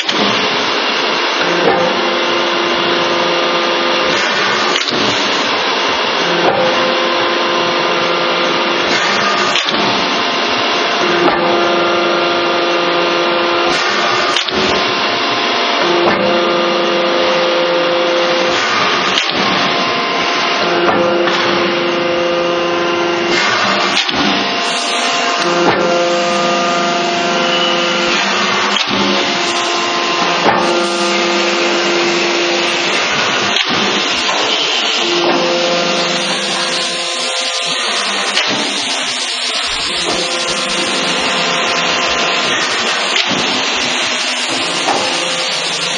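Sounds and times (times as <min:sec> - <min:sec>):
hydraulic cutting machine running: 0:23.2 - 0:45.9
humming whine: 0:23.4 - 0:45.9.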